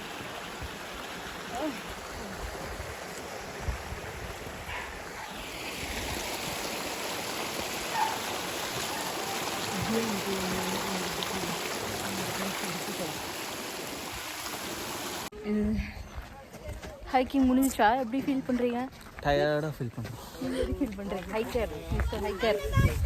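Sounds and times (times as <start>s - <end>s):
rushing water: 0.0s - 15.4s.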